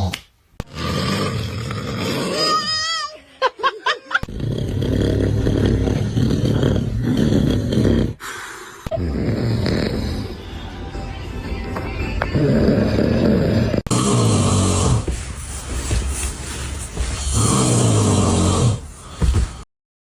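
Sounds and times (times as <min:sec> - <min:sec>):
loud snoring: 0:00.6 - 0:02.6, 0:04.2 - 0:08.3, 0:08.9 - 0:10.4, 0:12.4 - 0:19.6.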